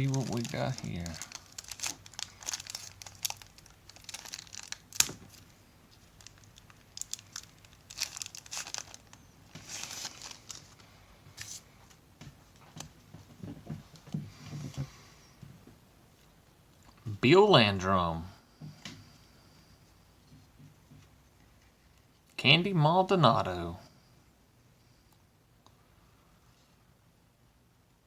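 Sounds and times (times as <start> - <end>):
wrapper tearing and crinkling: 0.0 - 10.8.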